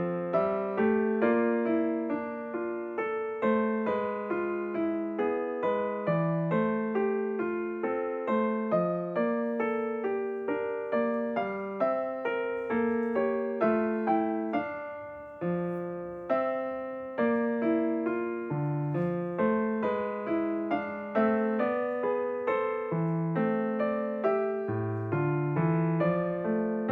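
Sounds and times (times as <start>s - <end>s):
gentle piano music: 0.0s - 26.9s.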